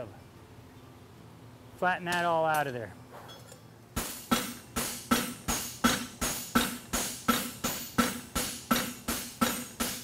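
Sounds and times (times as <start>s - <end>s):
hammer striking steel on anvil: 4.0s - 10.0s.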